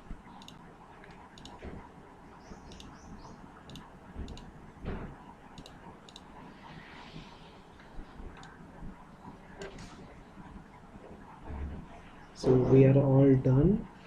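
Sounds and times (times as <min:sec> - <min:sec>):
computer mouse clicks: 0:00.3 - 0:01.6, 0:02.7 - 0:03.0, 0:03.7 - 0:04.5, 0:05.6 - 0:06.4, 0:08.3 - 0:08.6.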